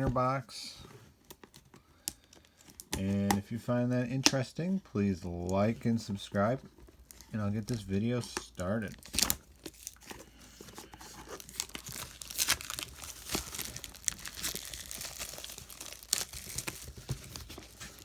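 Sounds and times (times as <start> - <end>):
plastic wrapping tearing and crinkling: 7.0 - 18.0.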